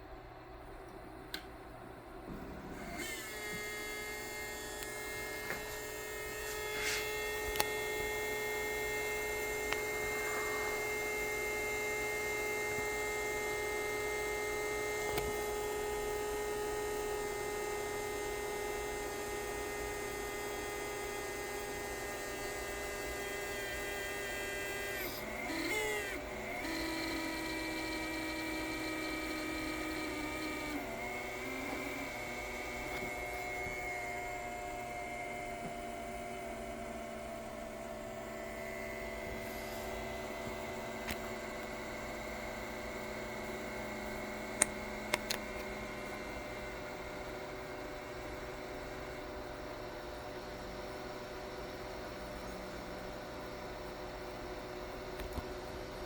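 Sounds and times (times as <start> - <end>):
print head whining: 2.3 - 16.7, 21.9 - 49.3.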